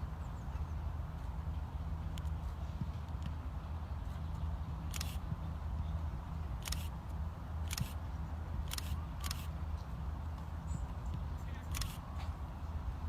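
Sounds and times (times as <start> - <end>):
steady low rumble: 0.0 - 13.0
camera shutter clicks: 4.9 - 5.2, 6.6 - 6.9, 7.6 - 8.0, 8.6 - 9.5, 11.7 - 12.0.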